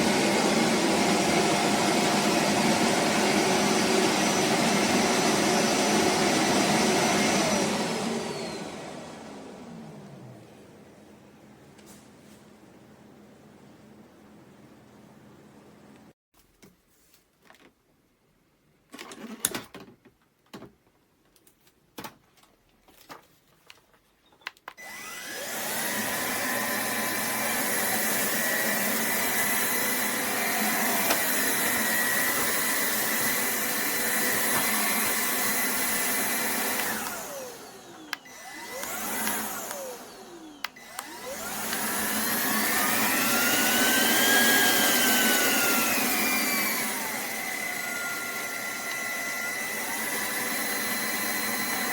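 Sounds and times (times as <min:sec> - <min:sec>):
vacuum motor whining: 0:00.0 - 0:11.1, 0:24.8 - 0:51.9.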